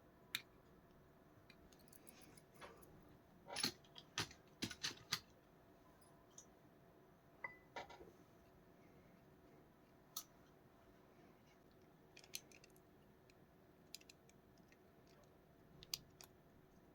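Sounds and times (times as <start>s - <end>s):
small hard parts clicking: 3.5s - 5.3s, 12.1s - 16.4s.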